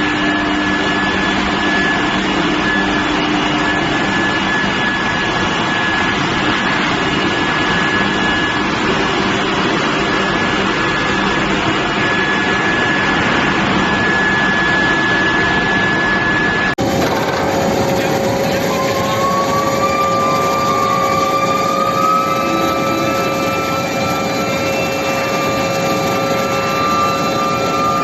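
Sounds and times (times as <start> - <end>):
high-pitched whine: 0.0 - 28.0
loud industrial furnace noise: 0.0 - 28.0.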